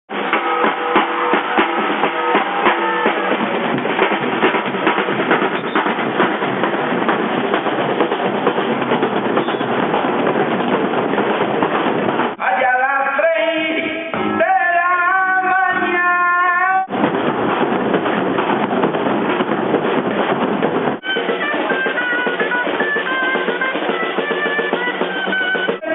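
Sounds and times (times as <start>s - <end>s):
drums beating steadily: 0.1s - 13.2s, 16.6s - 25.9s
held melodic notes: 21.0s - 25.9s.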